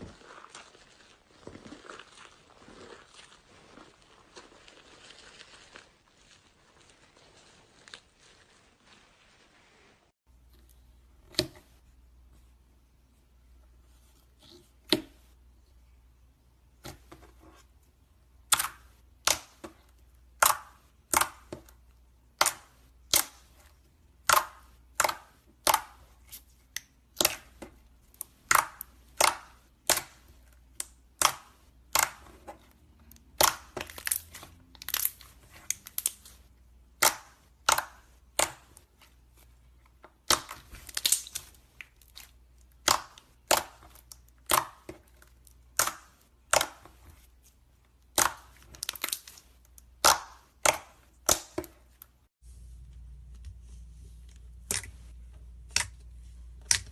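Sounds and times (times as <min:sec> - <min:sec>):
slime popping and crackling: 0:00.0 - 0:08.6, 0:18.4 - 0:39.4, 0:40.1 - 0:52.2.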